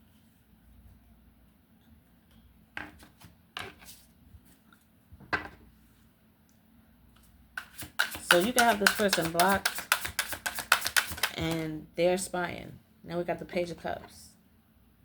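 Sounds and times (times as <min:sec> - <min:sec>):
faint steady hum: 0:00.0 - 0:15.0
cards snapping and tapping: 0:07.6 - 0:11.6.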